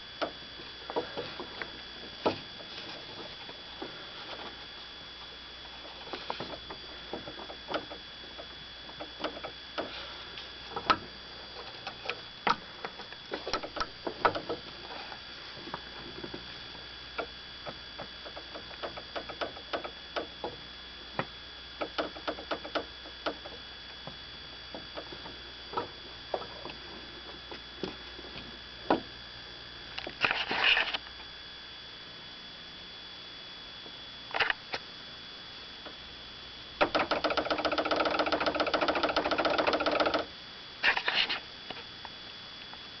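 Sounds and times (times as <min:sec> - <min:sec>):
brake line knocking and rattling: 0:06.2 - 0:10.0, 0:13.3 - 0:14.7, 0:17.6 - 0:20.6, 0:21.8 - 0:23.6, 0:36.8 - 0:40.3.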